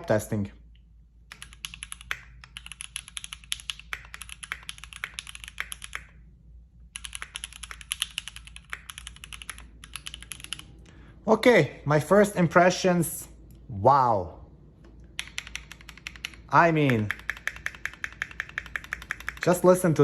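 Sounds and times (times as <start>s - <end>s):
mechanical keyboard typing: 1.3s - 6.2s, 6.9s - 10.7s, 15.1s - 19.6s.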